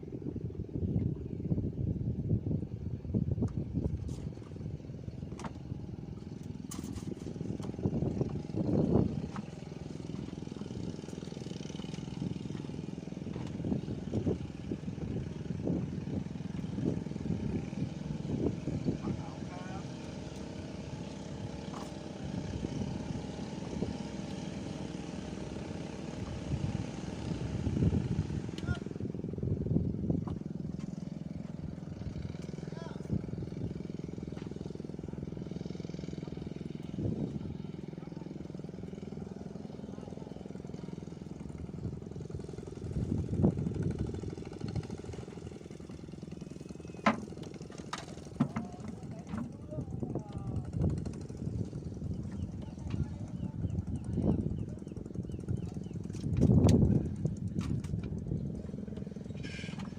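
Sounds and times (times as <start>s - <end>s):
wind buffeting microphone: 0.0s - 35.5s, 36.1s - 39.1s, 40.5s - 59.9s
motor hum: 0.0s - 59.9s
small engine idling: 2.7s - 59.9s.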